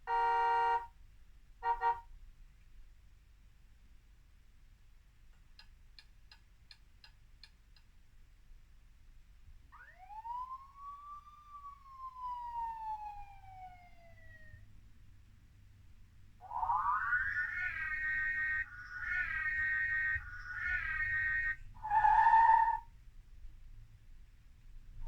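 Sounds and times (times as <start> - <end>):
toy siren wail: 9.8 - 14.6, 16.4 - 22.8.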